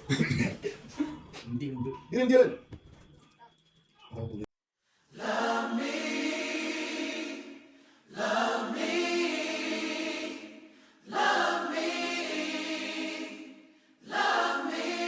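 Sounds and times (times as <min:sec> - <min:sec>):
choir singing unaccompanied: 0:05.1 - 0:15.0.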